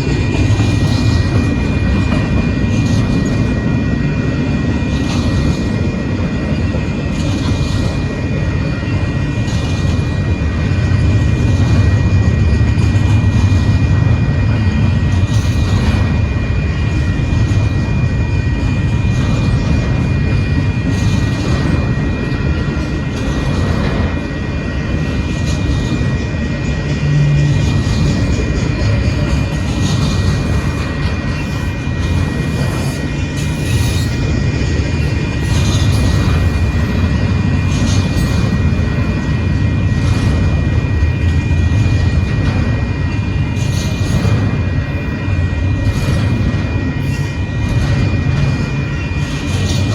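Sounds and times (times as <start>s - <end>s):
freight train wheels rumbling on rail: 0.0s - 49.9s.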